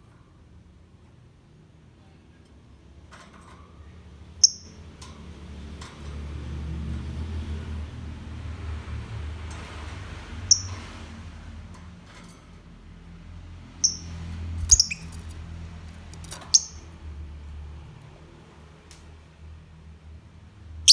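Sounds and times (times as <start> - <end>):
lovebird chirping: 4.4 - 4.8, 10.5 - 10.8, 13.8 - 15.4, 16.0 - 16.9.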